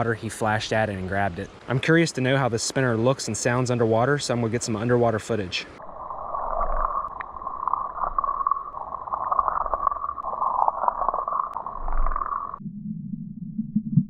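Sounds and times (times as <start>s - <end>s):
underwater rushing water: 0.0s - 12.6s
deep dull rumble: 9.5s - 14.0s.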